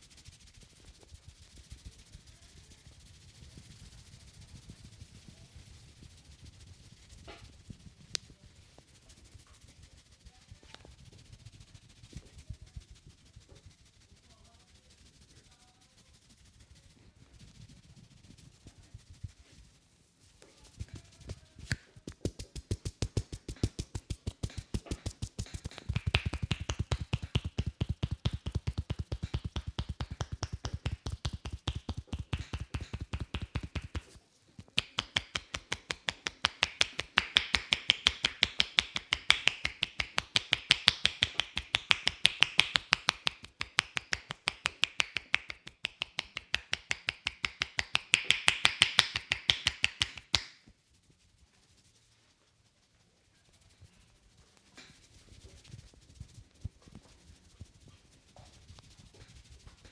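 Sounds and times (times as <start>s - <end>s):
hands striking in percussive massage: 21.7s - 50.5s.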